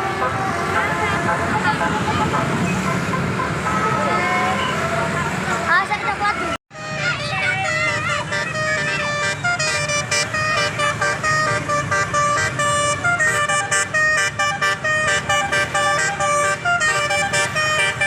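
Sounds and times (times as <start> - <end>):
musical bus horn tune: 0.0 - 5.4, 6.7 - 18.0
bus engine rumble: 0.0 - 18.0.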